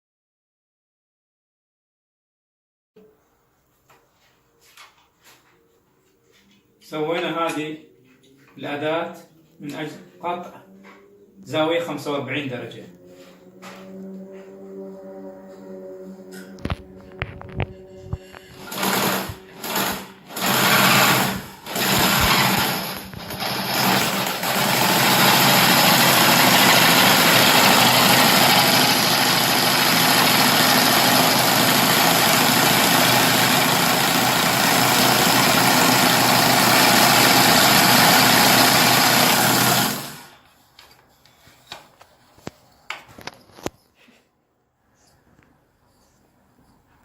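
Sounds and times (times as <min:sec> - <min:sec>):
scroll saw running: 0:18.5 - 0:40.4.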